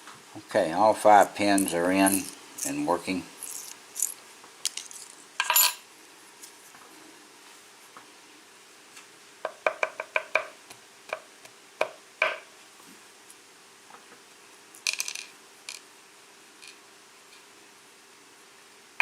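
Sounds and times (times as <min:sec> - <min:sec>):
metallic jingle: 0:01.4 - 0:05.8.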